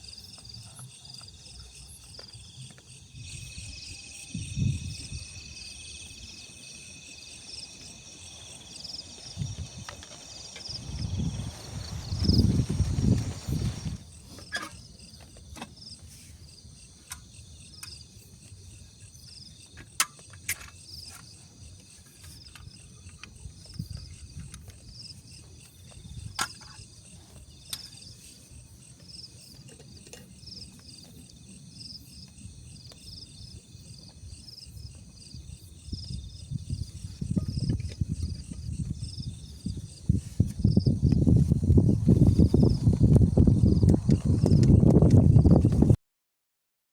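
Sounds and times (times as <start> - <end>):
insects chirping: 0.0 - 46.0
low rumble: 7.9 - 14.0.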